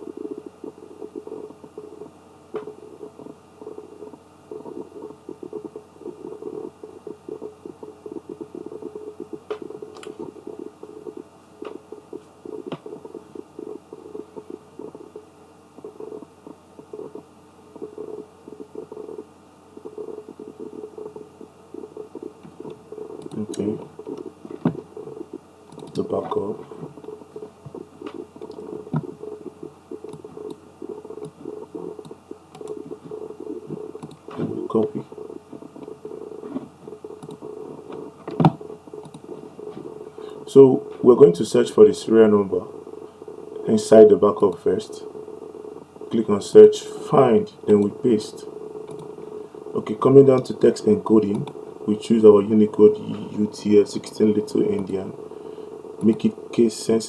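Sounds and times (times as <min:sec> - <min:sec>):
low crackling rumble: 0:00.0 - 0:57.0
computer mouse clicks: 0:07.8 - 0:10.3, 0:21.9 - 0:24.8, 0:25.7 - 0:40.0, 0:48.7 - 0:49.4, 0:50.3 - 0:51.6, 0:54.4 - 0:55.0, 0:56.0 - 0:56.4.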